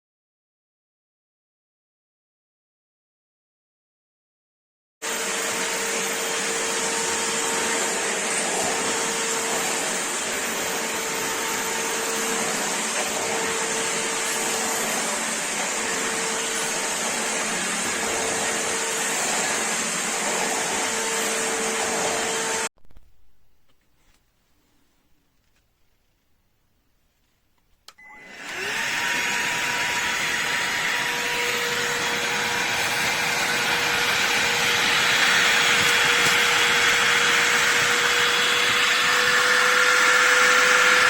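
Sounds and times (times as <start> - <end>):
vacuum cleaner running: 5.0 - 22.7, 28.0 - 41.0.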